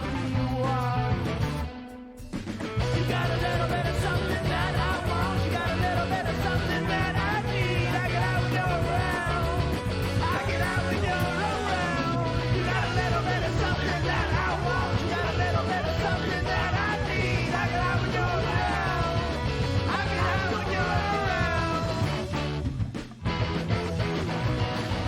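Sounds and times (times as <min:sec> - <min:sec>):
rock band playing: 0:00.0 - 0:25.0.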